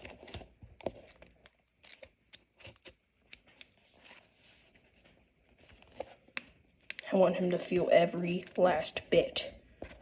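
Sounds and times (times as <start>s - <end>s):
sticky tape clicks and rustles: 0.0s - 3.8s.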